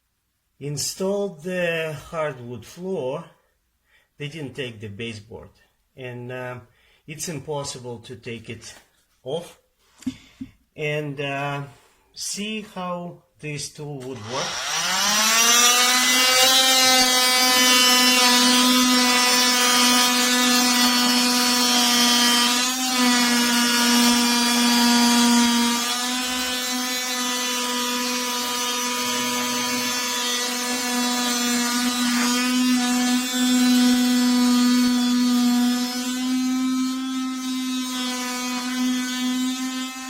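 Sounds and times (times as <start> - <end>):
oscillating multi-tool cutting wood: 14.0 - 40.0.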